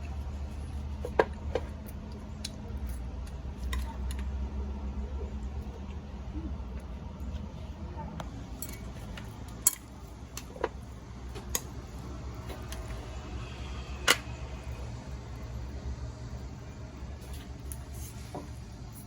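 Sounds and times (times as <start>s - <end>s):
low steady hum: 0.0s - 19.0s
utensils clinking against dishes: 8.5s - 9.0s.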